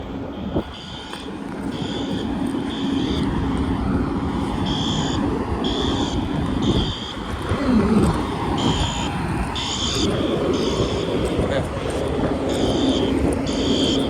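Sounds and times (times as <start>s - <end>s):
fire alarm horn beeps: 0.0s - 3.4s, 4.3s - 7.4s, 8.5s - 11.5s, 12.4s - 14.0s
vehicle engine humming: 0.0s - 14.0s.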